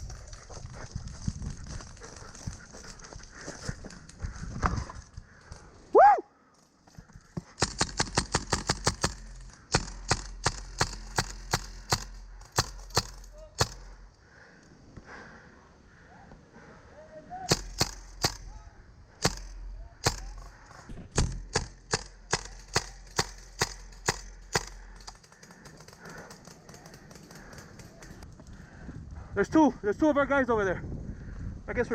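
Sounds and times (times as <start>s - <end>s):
airsoft gun shots: 7.6s - 14.0s, 17.5s - 18.6s, 19.2s - 24.8s.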